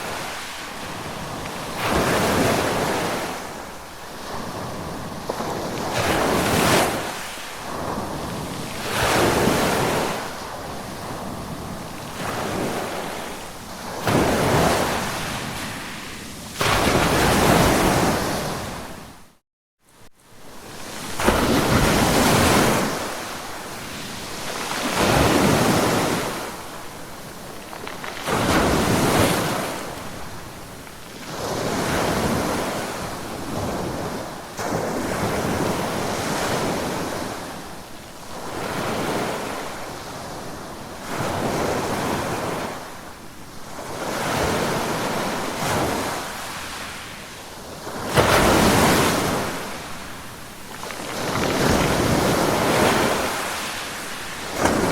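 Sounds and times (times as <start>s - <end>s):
ocean waves breaking on shore: 0.0s - 19.4s, 20.3s - 54.9s.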